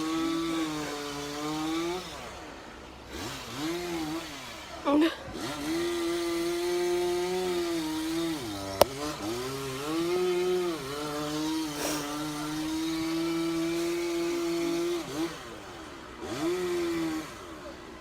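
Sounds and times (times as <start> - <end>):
chainsaw running at high revs: 0.0 - 18.0.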